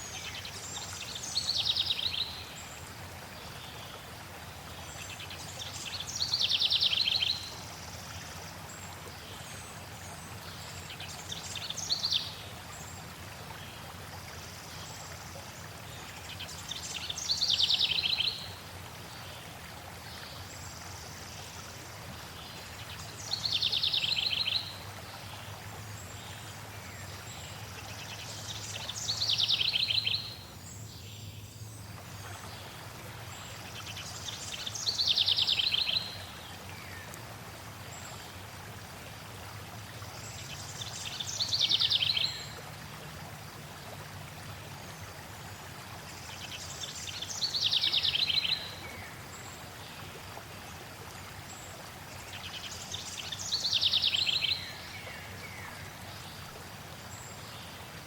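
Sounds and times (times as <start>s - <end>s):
flowing water rushing: 0.0s - 58.0s
songbird trilling song: 28.6s - 31.7s.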